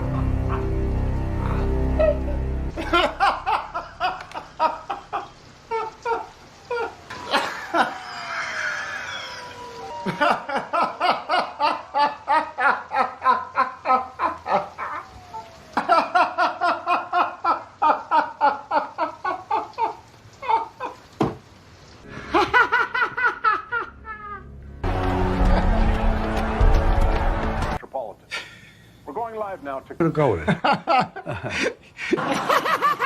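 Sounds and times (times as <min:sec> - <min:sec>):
person laughing hard: 0:02.0 - 0:09.0, 0:09.9 - 0:15.1, 0:22.2 - 0:24.5.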